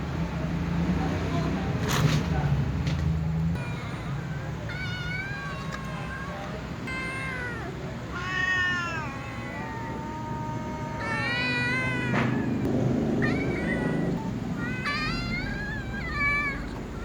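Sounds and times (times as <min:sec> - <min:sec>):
kittens meowing: 0:03.6 - 0:17.0.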